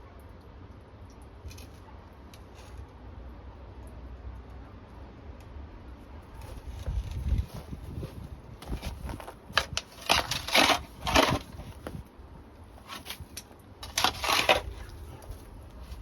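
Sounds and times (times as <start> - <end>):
crunching and scraping: 6.3 - 16.0.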